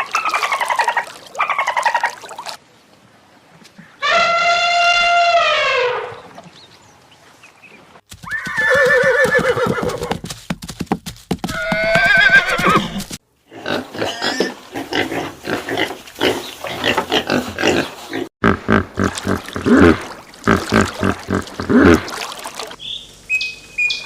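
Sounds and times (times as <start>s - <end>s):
horse whinnying: 8.2s - 10.2s, 11.5s - 13.1s.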